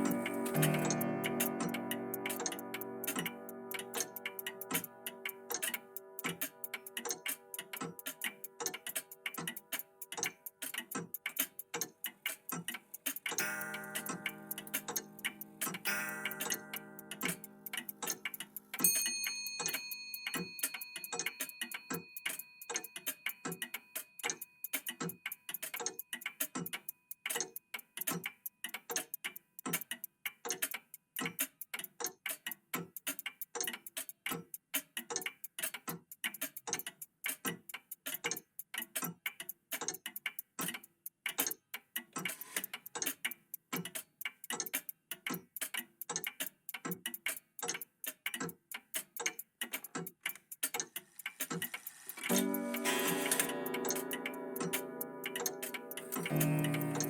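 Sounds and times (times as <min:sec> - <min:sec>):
mechanical clocks ticking: 0:00.0 - 0:57.0
high bell-like chime: 0:15.8 - 0:17.0, 0:18.8 - 0:24.7, 0:52.3 - 0:57.0.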